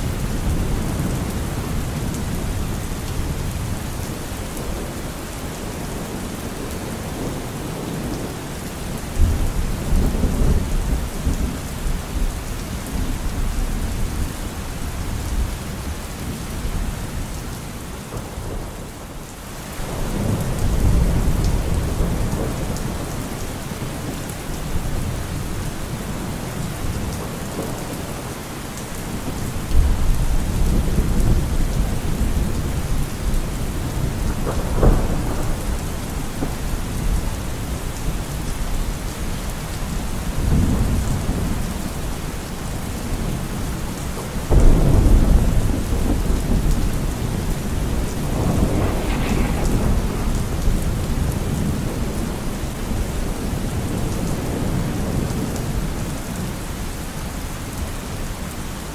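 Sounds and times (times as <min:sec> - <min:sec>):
steady rain: 0:00.0 - 0:58.9
thunder rumbling: 0:19.8 - 0:28.4, 0:29.1 - 0:43.8, 0:44.4 - 0:56.6.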